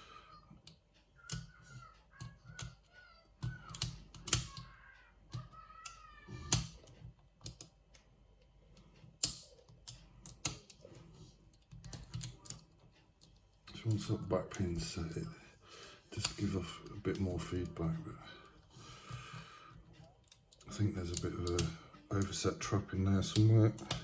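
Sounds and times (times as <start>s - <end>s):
lock pick clicking and scraping: 3.4s - 4.7s, 6.5s - 7.8s, 9.1s - 10.8s, 11.5s - 13.4s.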